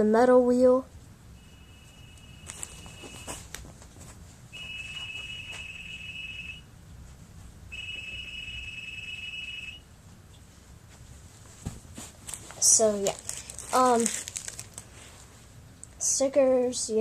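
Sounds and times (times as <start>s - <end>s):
electronic alarm beep: 1.4s - 3.4s, 4.5s - 6.7s, 7.7s - 9.8s.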